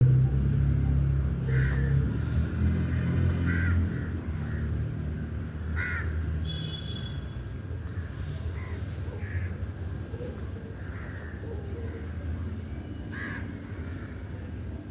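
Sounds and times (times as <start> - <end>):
crows cawing: 1.5 - 1.8, 3.4 - 4.6, 5.7 - 6.2, 9.2 - 9.6, 10.8 - 11.4, 13.1 - 14.2.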